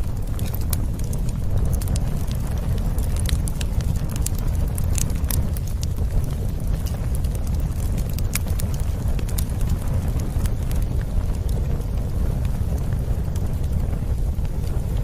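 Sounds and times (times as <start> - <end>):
crackles and pops of burning wood: 0.0 - 15.0
steady low rumble: 0.0 - 15.0.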